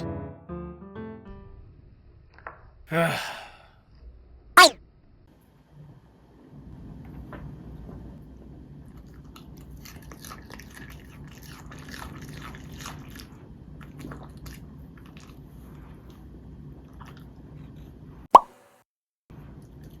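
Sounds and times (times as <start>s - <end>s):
dog chewing crunchy vegetables: 9.6s - 13.2s.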